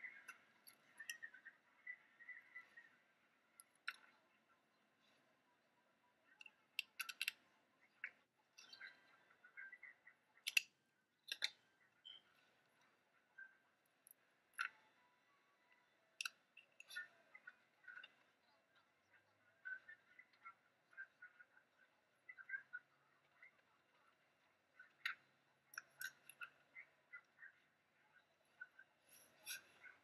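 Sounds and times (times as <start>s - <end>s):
paper and craft tools clicking: 6.8s - 7.4s.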